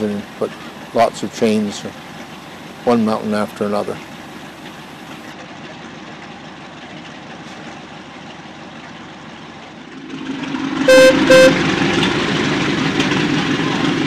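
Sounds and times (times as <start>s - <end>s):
locomotive rumble: 0.0s - 14.0s
train whistle toots: 10.9s - 11.6s.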